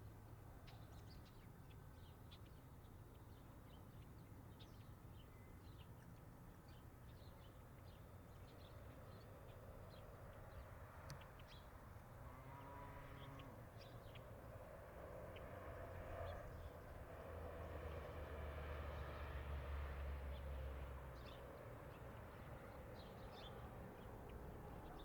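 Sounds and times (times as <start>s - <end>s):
distant traffic rumble: 9.3s - 25.0s.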